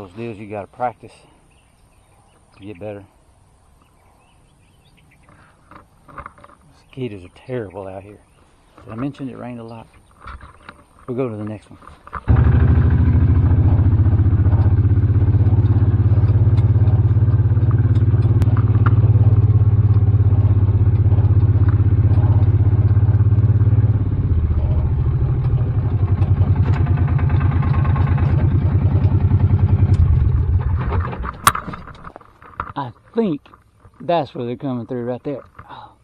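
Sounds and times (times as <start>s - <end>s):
small vehicle engine running: 12.2s - 32.0s.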